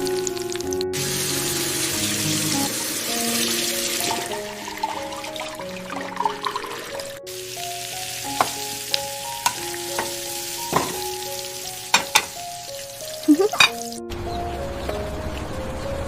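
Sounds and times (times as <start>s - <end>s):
food sizzling in a pan: 0.0s - 14.0s
soft melody of held notes: 0.0s - 16.0s
cooking utensil tapping: 8.3s - 11.2s, 11.9s - 12.4s, 13.4s - 13.9s.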